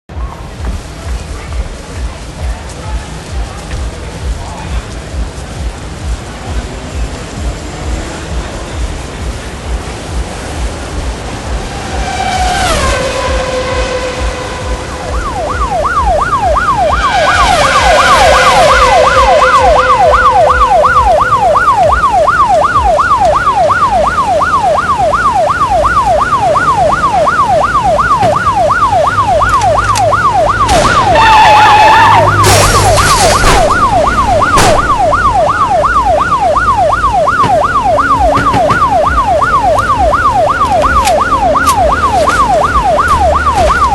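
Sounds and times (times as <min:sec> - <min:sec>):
emergency siren yelping: 0:10.0 - 0:43.9
loud horn blast: 0:11.8 - 0:15.1, 0:16.9 - 0:20.3.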